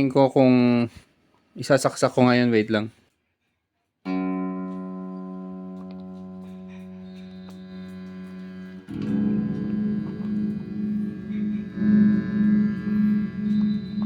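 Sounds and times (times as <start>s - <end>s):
electric bass guitar notes: 4.1s - 14.0s.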